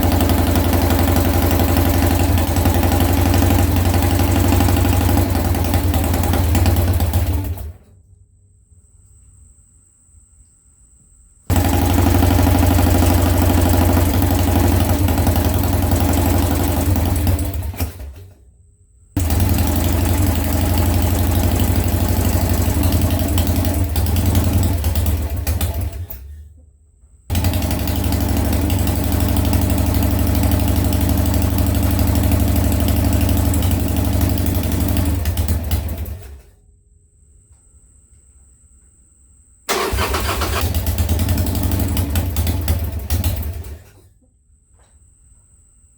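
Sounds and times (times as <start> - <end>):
motorcycle engine running: 0.0 - 7.8, 11.5 - 18.3, 19.2 - 26.4, 27.3 - 36.5, 39.7 - 43.9.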